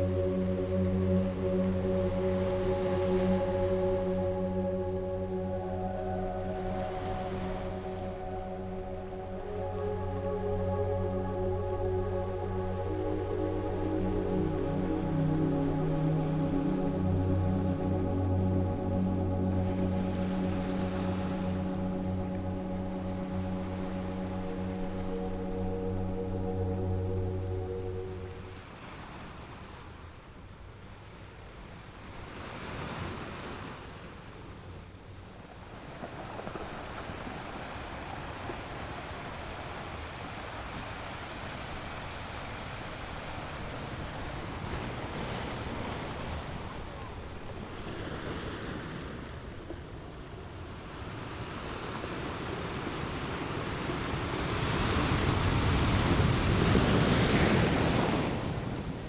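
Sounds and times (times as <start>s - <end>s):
ocean waves breaking on shore: 35.7s - 59.0s.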